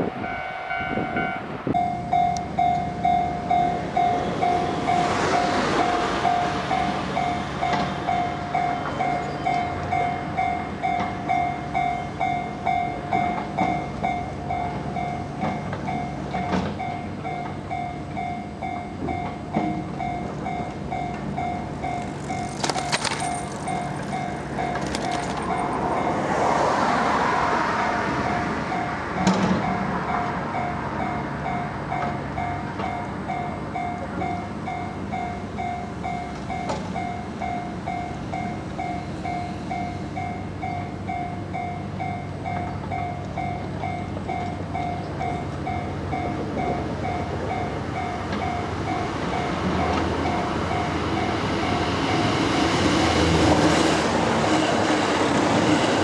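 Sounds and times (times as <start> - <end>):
train running on rails: 0.0 - 56.0
level-crossing bell clanging: 0.2 - 26.4.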